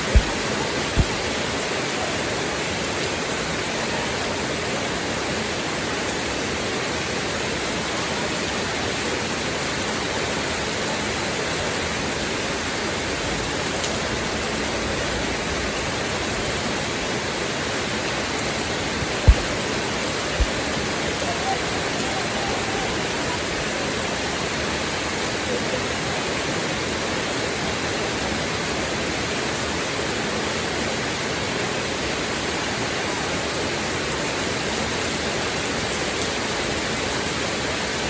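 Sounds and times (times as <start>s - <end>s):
low thump: 0.0s - 1.2s, 19.3s - 19.6s
steady rain hiss: 0.0s - 38.0s.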